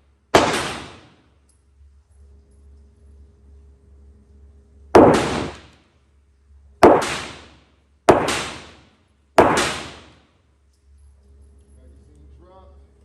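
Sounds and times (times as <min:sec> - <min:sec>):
pistol shots echoing: 0:00.3 - 0:01.2, 0:05.0 - 0:05.8, 0:06.8 - 0:10.2.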